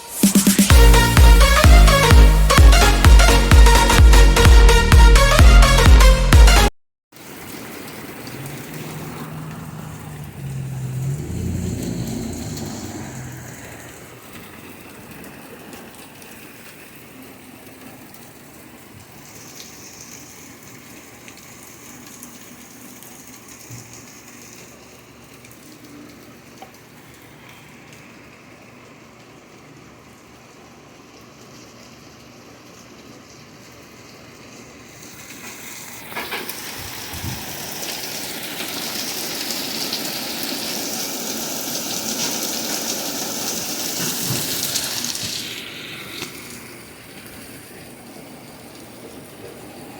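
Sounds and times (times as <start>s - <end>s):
steady rain falling: 0.1s - 5.8s, 7.2s - 49.9s
low rumble: 9.7s - 14.1s.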